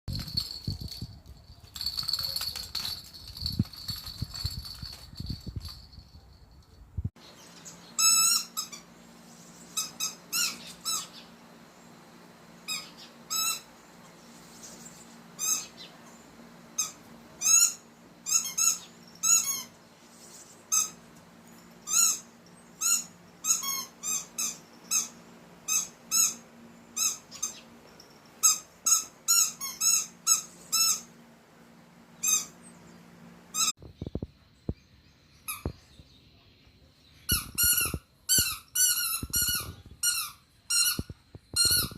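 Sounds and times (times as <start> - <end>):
steady low hum: 0.1 - 41.9
pet squeaky calls: 8.0 - 8.9, 9.7 - 11.3, 12.7 - 13.7, 21.8 - 26.4, 37.3 - 41.9.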